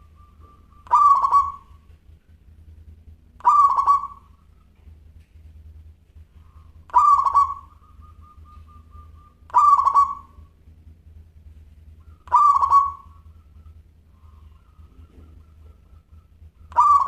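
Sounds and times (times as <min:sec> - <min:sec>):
dove cooing: 0:00.0 - 0:02.0, 0:03.4 - 0:05.1, 0:06.3 - 0:10.6, 0:11.9 - 0:17.0
low steady hum: 0:00.0 - 0:17.0.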